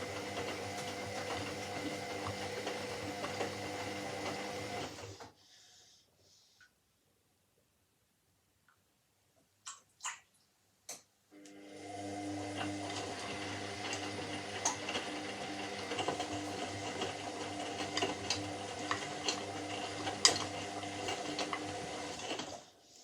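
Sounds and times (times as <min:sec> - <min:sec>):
washing machine motor hum: 0:00.0 - 0:05.3, 0:11.4 - 0:22.8.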